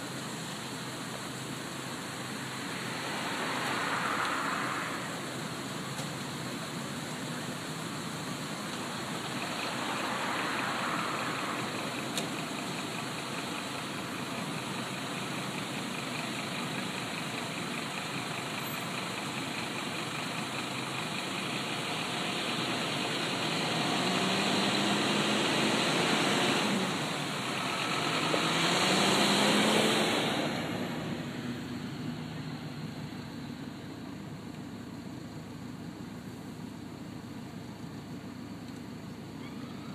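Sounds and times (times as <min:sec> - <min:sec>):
steady background hiss: 0:00.0 - 0:39.9
fire engine revving: 0:00.1 - 0:34.0.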